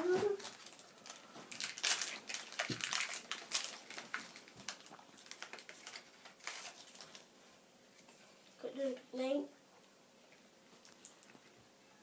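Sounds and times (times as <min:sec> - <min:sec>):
foil wrapper crinkling: 0:00.2 - 0:07.3.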